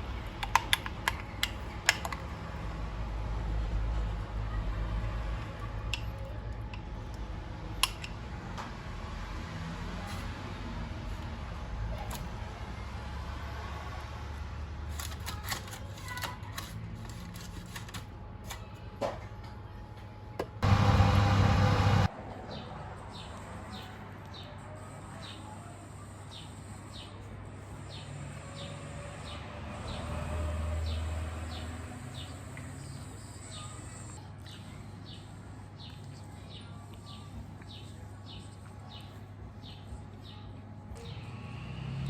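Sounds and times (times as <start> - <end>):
loud burst of noise: 20.6 - 22.1.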